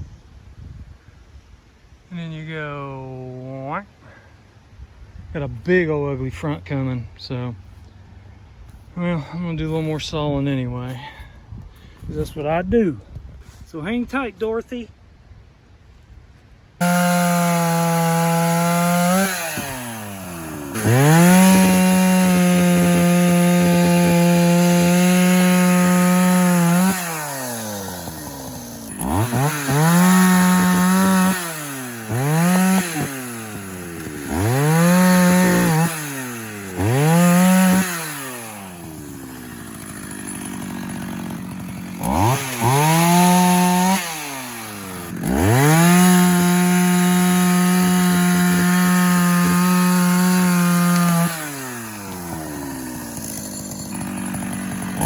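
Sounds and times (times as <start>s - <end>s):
chainsaw cutting wood: 16.8s - 55.0s.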